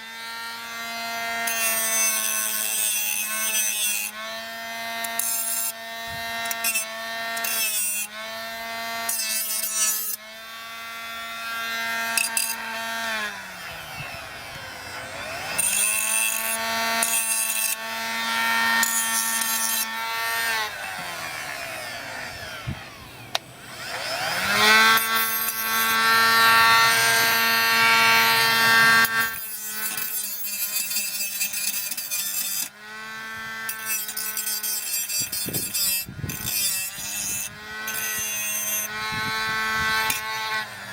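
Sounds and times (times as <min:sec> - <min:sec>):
angle grinder whining: 0:00.0 - 0:40.9
disc grinding material: 0:11.5 - 0:32.7, 0:33.4 - 0:40.9.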